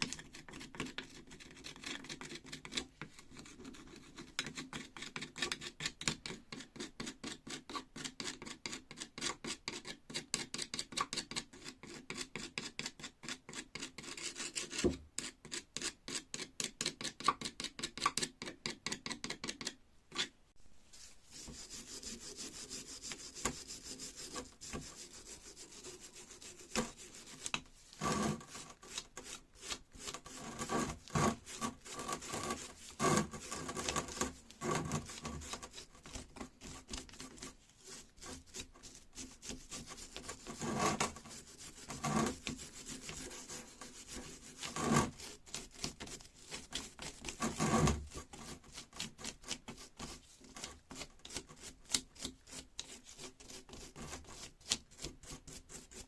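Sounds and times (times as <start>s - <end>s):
irregular scraping on metal: 20.9s - 38.4s
rubbing strokes on rusty metal: 20.9s - 45.8s.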